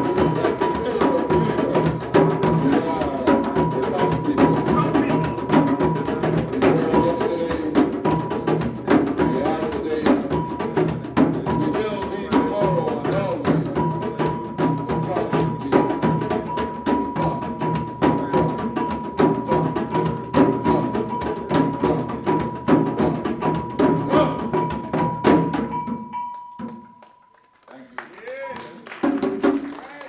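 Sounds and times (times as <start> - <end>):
drums with wood-block strikes: 0.0 - 27.3, 28.5 - 30.0.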